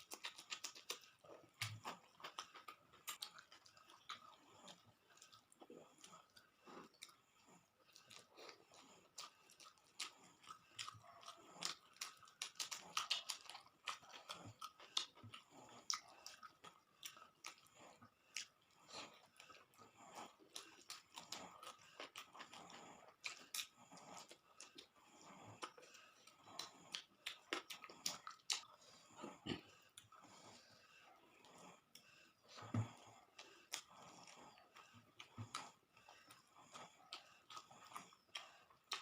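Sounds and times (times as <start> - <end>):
person chewing food: 0.0 - 39.0.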